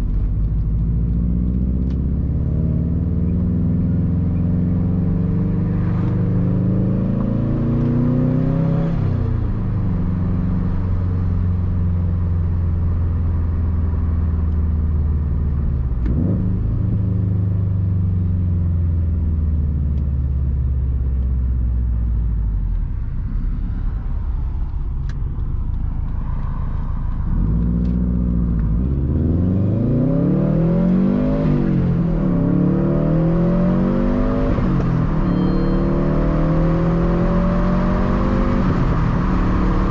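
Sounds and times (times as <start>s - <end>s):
car engine revving while driving: 0.0s - 39.9s.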